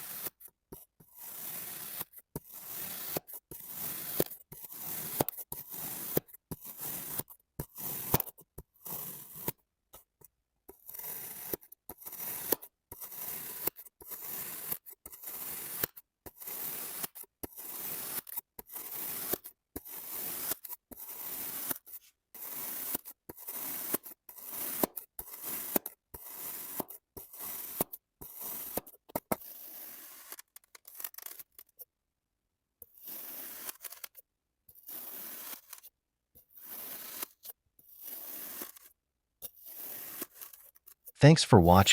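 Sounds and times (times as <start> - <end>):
kinetic sand being cut: 0.0 - 0.5, 1.2 - 8.3, 34.8 - 35.8, 36.6 - 37.4, 38.0 - 38.9.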